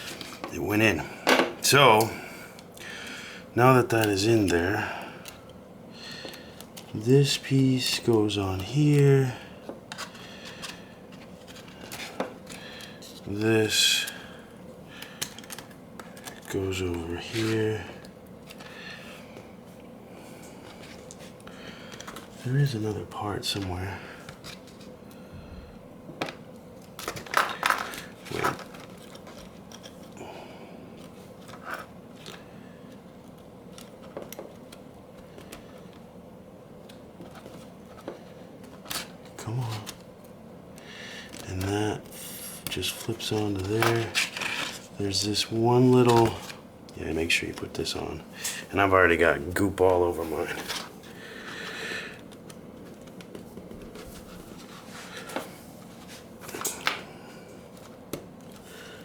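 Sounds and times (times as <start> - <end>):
faint steady hum: 0.0 - 59.0
handling rustle: 26.4 - 30.2, 30.8 - 59.0.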